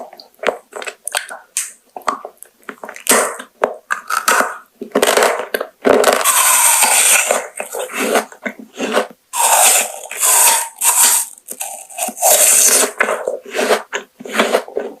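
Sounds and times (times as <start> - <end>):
crunching and chewing: 0.4 - 15.0.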